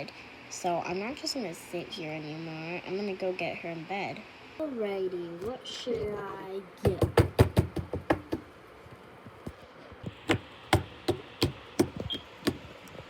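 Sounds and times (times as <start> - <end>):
sharp knocks and taps: 6.8 - 8.5, 9.4 - 12.7.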